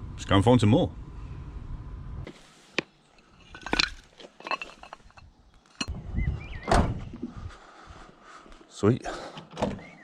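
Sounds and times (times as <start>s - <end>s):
small hard objects clinking: 3.1s - 5.9s.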